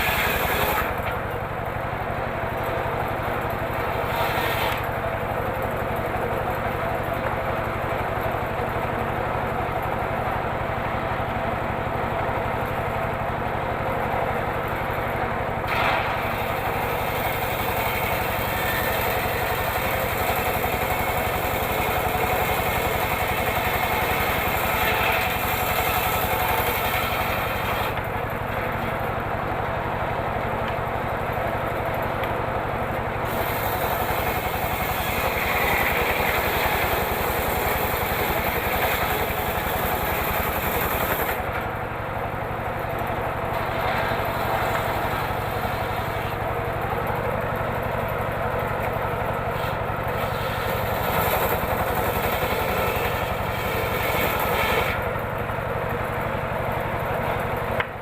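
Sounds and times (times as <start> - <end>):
circular saw ripping wood: 0.0 - 1.3, 3.6 - 5.0, 15.7 - 29.0, 33.2 - 41.7, 43.4 - 46.4, 49.5 - 55.2.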